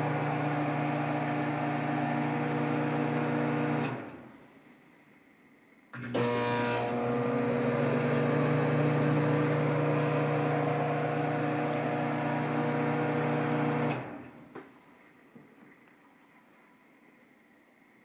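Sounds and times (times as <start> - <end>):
microwave humming: 0.0 - 4.3, 6.0 - 14.3
rattling buzz: 6.0 - 12.3.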